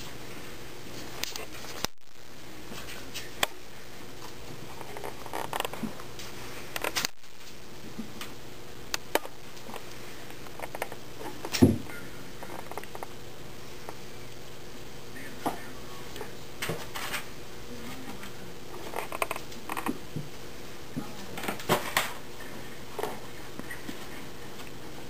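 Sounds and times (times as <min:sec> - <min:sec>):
kittens tapping and scratching: 0:04.2 - 0:08.3, 0:09.0 - 0:11.8, 0:18.1 - 0:20.3
loud thump: 0:11.6 - 0:11.9.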